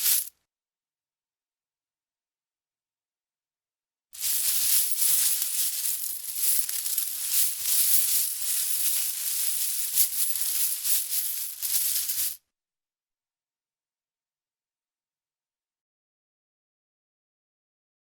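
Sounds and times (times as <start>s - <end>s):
coins clinking and jingling: 0.0s - 0.3s, 4.2s - 12.4s.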